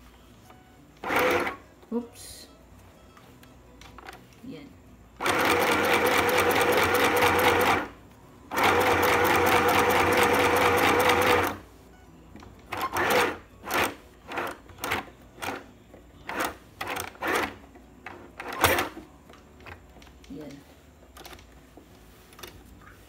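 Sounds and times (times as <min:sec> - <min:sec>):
sewing machine stitching: 0:01.0 - 0:01.6, 0:05.2 - 0:11.6, 0:12.7 - 0:15.6, 0:16.2 - 0:19.0.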